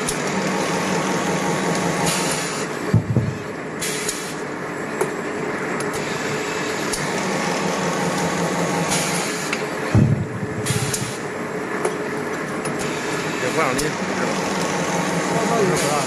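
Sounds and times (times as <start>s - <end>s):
machine humming: 0.0s - 3.8s, 6.0s - 16.0s
heavy clunk: 2.9s - 3.4s, 9.8s - 11.2s.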